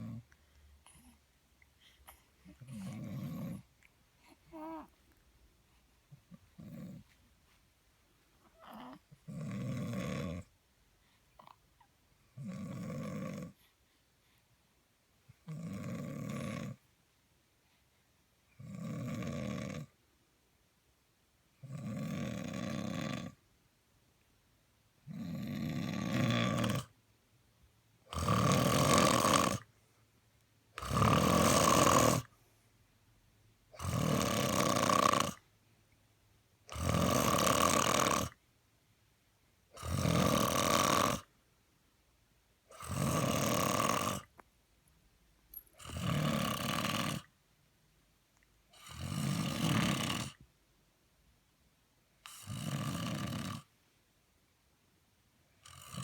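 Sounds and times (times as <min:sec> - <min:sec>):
man snoring: 0:09.3 - 0:10.4, 0:12.4 - 0:13.6, 0:15.5 - 0:16.8, 0:18.6 - 0:19.9, 0:21.7 - 0:23.4, 0:25.1 - 0:26.9, 0:28.1 - 0:29.6, 0:30.8 - 0:32.3, 0:33.8 - 0:35.4, 0:36.7 - 0:38.4, 0:39.8 - 0:41.3, 0:42.7 - 0:44.3, 0:45.8 - 0:47.3, 0:48.8 - 0:50.4, 0:52.3 - 0:53.7.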